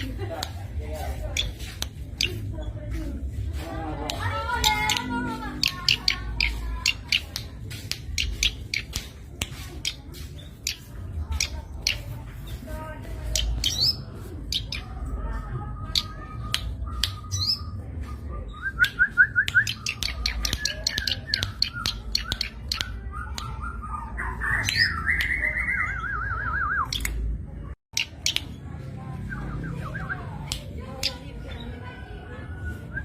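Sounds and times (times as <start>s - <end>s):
bird calling with ticks and trills: 4.1s - 27.3s, 27.9s - 28.6s.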